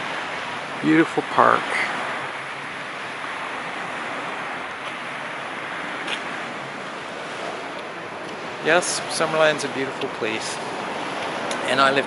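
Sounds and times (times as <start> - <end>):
small waves washing on shore: 0.0 - 12.0.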